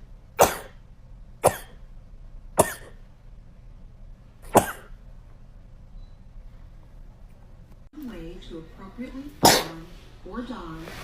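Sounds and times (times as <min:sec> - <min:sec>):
woman sneezing: 0:09.4 - 0:09.9.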